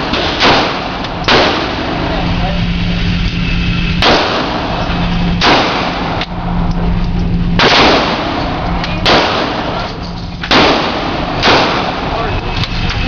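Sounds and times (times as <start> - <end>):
gunshots with echo: 0.0 - 2.2, 4.0 - 6.3, 7.5 - 9.9, 10.5 - 12.4
steady low hum: 0.0 - 13.0.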